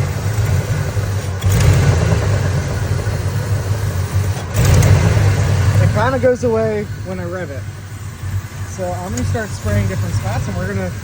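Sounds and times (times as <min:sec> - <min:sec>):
engine idling rough: 0:00.0 - 0:11.0
vacuum leak hiss: 0:02.2 - 0:11.0.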